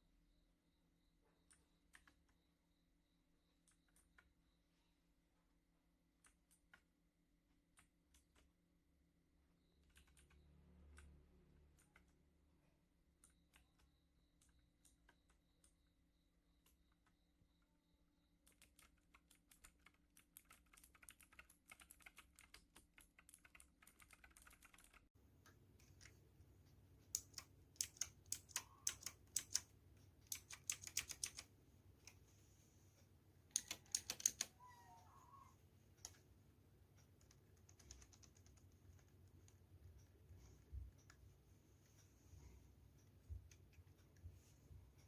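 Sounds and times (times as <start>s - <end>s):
mechanical keyboard typing: 6.1s - 8.6s, 9.6s - 12.4s, 18.3s - 25.1s, 27.0s - 32.2s, 33.4s - 35.0s, 37.0s - 40.0s.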